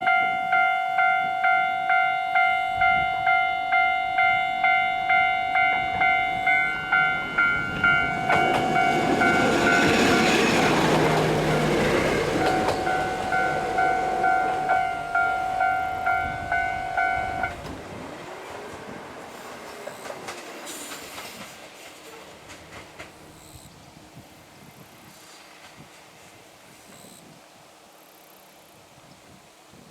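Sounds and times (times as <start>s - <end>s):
level crossing warning bell: 0.0s - 17.7s
train rumble: 0.0s - 27.2s.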